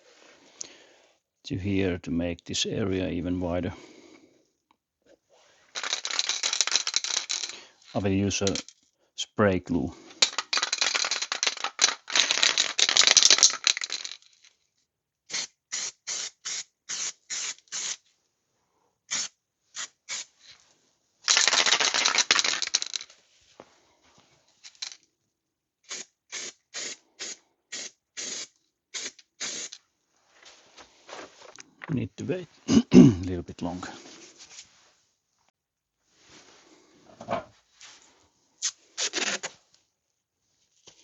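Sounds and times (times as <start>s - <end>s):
aerosol can spraying hiss: 15.3s - 18.0s, 19.1s - 20.3s, 25.9s - 29.8s
short quick spray squirts: 15.3s - 18.0s, 19.1s - 20.3s, 25.9s - 29.8s.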